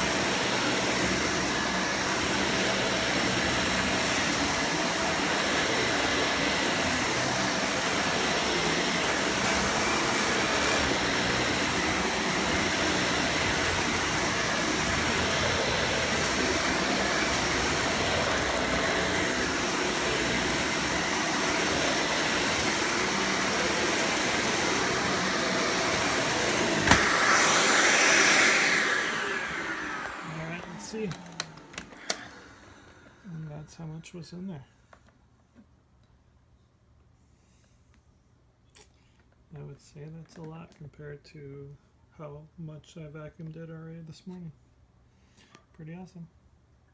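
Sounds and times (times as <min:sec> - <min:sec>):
vacuum cleaner running on carpet: 0:00.0 - 0:33.7
vacuum motor winding down: 0:00.0 - 0:33.7.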